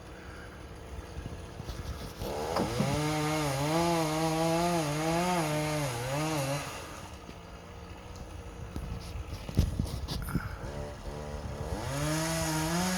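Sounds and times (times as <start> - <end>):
chainsaw cutting wood: 0.8 - 8.1, 10.6 - 12.9.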